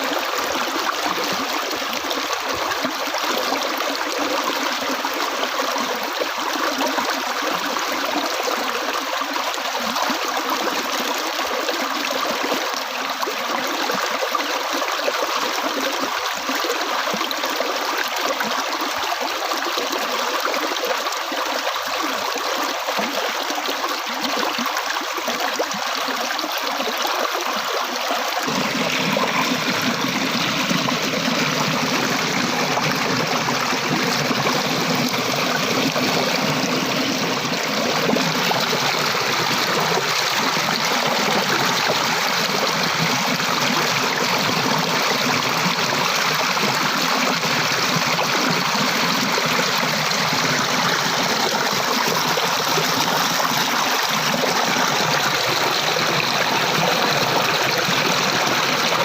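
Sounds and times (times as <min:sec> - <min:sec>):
water rushing and splashing: 0:27.3 - 0:59.0.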